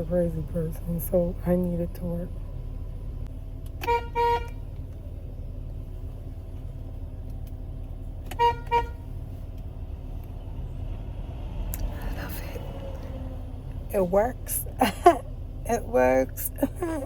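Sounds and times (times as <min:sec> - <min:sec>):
low rumble: 0:00.0 - 0:17.0
car horn beeps: 0:03.8 - 0:04.6, 0:08.3 - 0:09.1.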